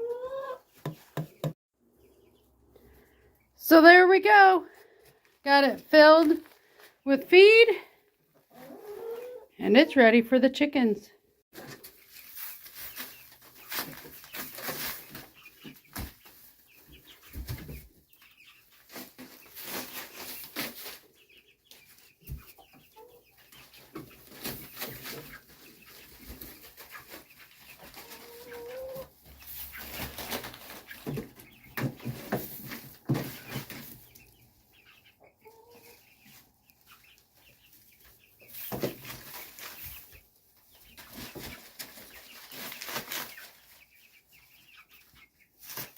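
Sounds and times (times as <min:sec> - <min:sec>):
chickens clucking: 0:00.0 - 0:03.6, 0:08.2 - 0:10.4, 0:11.6 - 0:45.9
sharp taps and scratches: 0:00.8 - 0:01.6.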